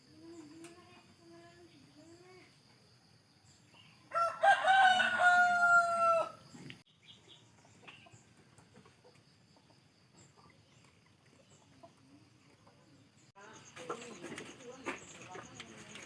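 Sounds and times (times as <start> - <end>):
rooster crowing: 4.1 - 6.5.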